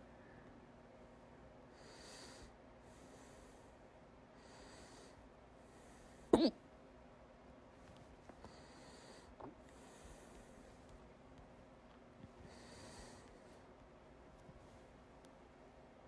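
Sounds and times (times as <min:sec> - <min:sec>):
soft breaths: 0:01.7 - 0:06.4, 0:07.8 - 0:15.4
person hiccuping: 0:06.4 - 0:06.6.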